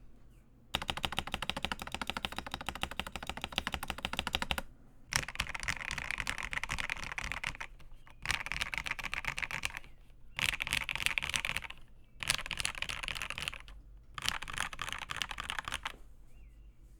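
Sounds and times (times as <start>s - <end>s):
fast typing on mechanical keyboard: 0.7s - 16.0s.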